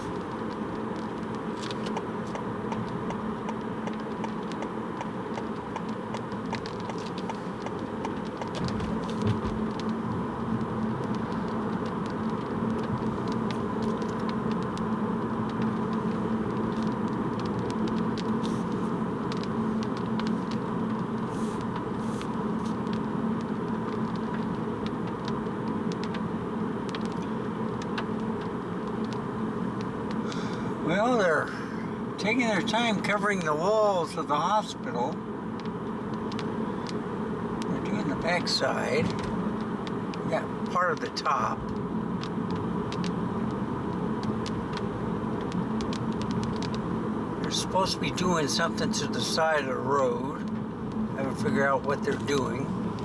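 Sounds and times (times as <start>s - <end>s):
car road and engine noise: 0.0s - 53.0s.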